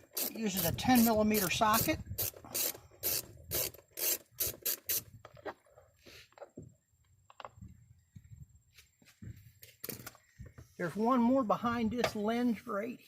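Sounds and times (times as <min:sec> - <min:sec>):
ratchet clicking: 0:00.0 - 0:05.1.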